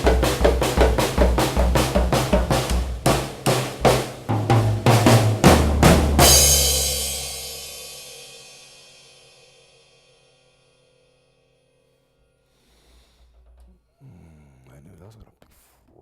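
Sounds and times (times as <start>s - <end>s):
drum kit beat: 0.0s - 8.8s
cymbal crash: 5.3s - 11.6s.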